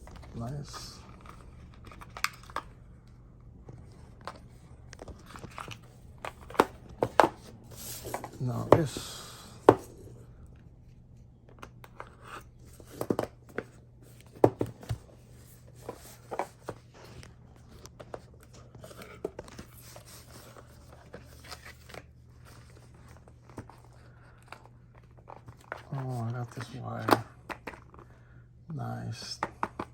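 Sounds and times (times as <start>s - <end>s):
plastic and cardboard rustling: 0.0s - 10.2s, 11.7s - 28.1s
faint steady hum: 0.0s - 29.9s
packaging clicks and taps: 29.4s - 29.9s.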